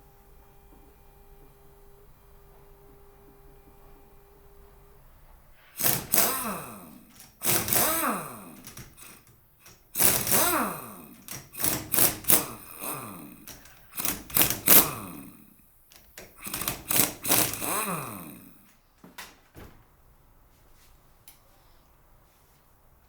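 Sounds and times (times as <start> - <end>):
power tool whining and rattling: 5.6 - 19.7.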